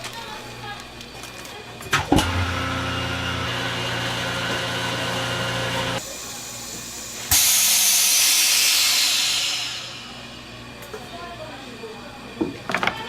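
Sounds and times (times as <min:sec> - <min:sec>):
mechanical hum with low drone: 0:00.0 - 0:13.0
loud hiss: 0:05.9 - 0:10.4.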